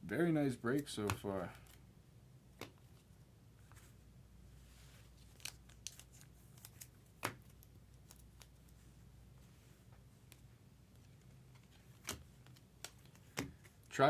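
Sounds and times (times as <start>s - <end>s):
trading cards clicking and rustling: 0.7s - 1.8s, 10.3s - 13.9s.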